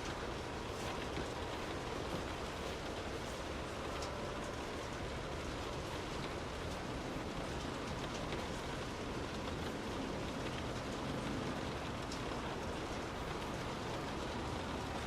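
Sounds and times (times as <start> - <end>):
rain drumming on car roof: 0.0 - 15.0.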